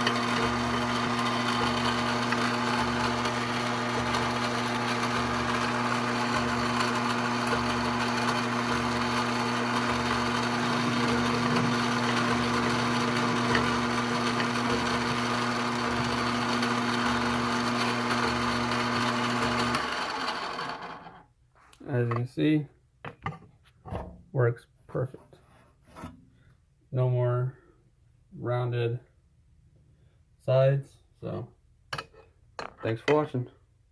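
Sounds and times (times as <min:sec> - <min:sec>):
lathe motor hum: 0:00.0 - 0:21.2.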